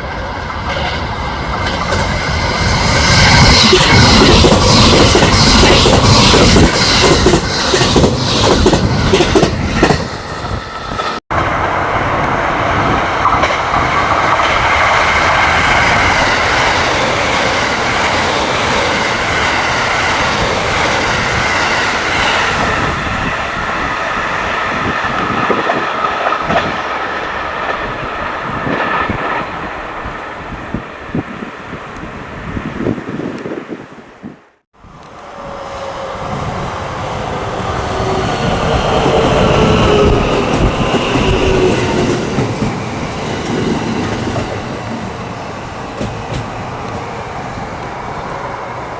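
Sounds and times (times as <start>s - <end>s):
train rushing rumble with whine: 0.0s - 48.9s
train wheels clicking over rail joints: 0.7s - 11.5s, 38.6s - 45.1s, 45.9s - 47.0s.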